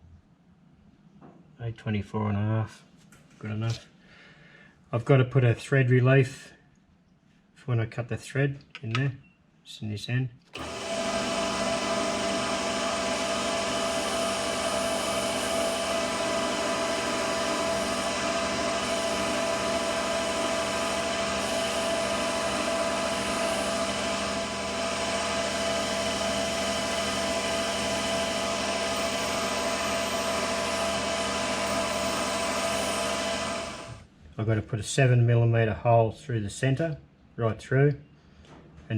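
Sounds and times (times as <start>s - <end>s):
metal lathe whining: 10.6s - 34.0s.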